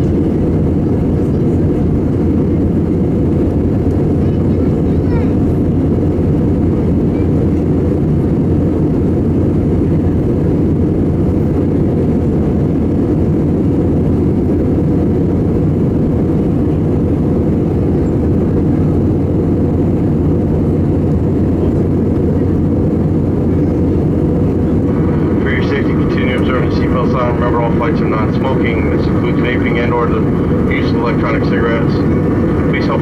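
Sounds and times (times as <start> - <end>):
jet engine and airflow roar: 0.0 - 33.0
faint steady hum: 22.3 - 33.0.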